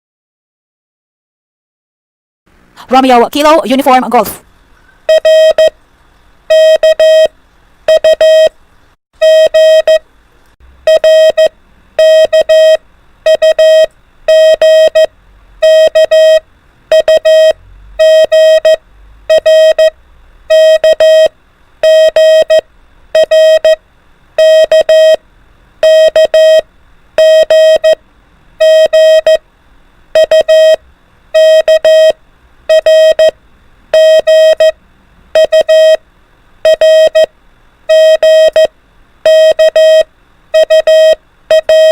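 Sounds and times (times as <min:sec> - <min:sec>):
morse code beeps: 0:05.1 - 0:05.8, 0:06.5 - 0:07.3, 0:07.9 - 0:08.5, 0:09.2 - 0:10.0, 0:10.8 - 0:22.6, 0:23.2 - 0:23.8, 0:24.4 - 0:25.2, 0:25.8 - 0:26.6, 0:27.2 - 0:28.0, 0:28.6 - 0:29.4, 0:30.2 - 0:30.8, 0:31.4 - 0:34.8, 0:35.4 - 0:36.0, 0:36.6 - 0:37.3, 0:37.9 - 0:41.9.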